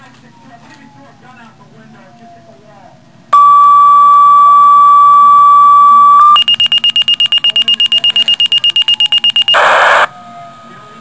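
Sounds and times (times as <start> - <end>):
pager rapid high beeping: 3.4 - 10.1
pager steady tone: 3.4 - 11.0.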